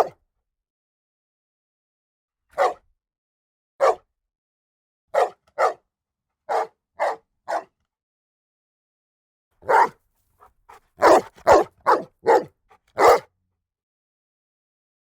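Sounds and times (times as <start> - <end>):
dog barking: 2.6 - 2.8, 3.8 - 4.0, 5.1 - 5.8, 6.5 - 7.7, 9.6 - 10.0, 10.7 - 13.3.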